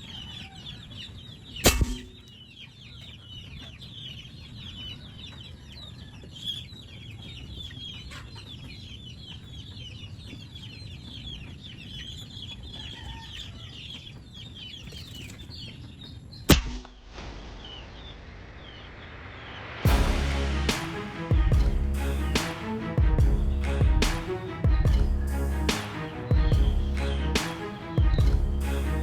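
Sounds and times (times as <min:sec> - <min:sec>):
birds chirping: 0:21.5 - 0:29.0.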